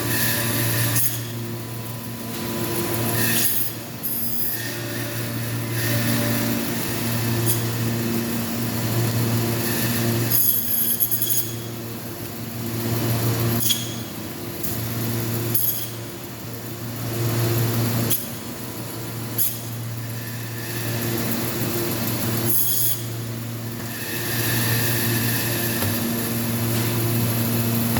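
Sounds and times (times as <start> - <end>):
meat bandsaw cutting: 0.0 - 1.4, 2.6 - 11.7, 19.4 - 27.9.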